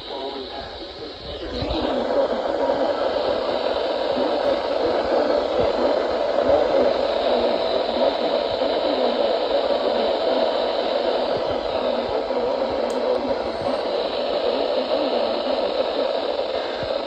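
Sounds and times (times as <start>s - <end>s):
radio static hiss: 0.0s - 17.0s.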